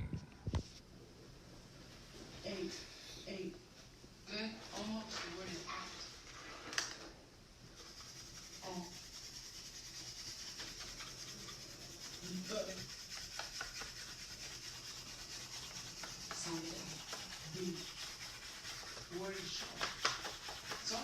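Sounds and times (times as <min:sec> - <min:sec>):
vinyl wrap rubbing hiss: 0:07.6 - 0:21.0.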